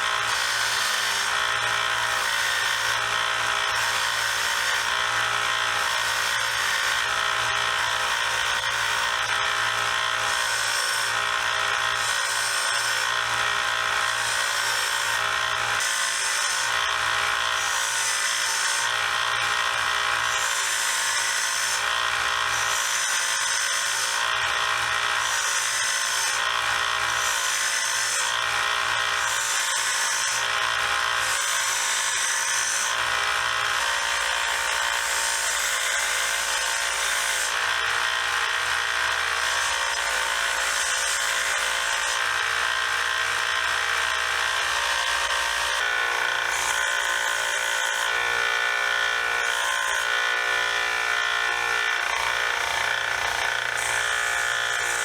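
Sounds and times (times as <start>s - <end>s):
belt sander motor whine: 0.0s - 55.0s
metal rasping on sander belt: 44.4s - 55.0s.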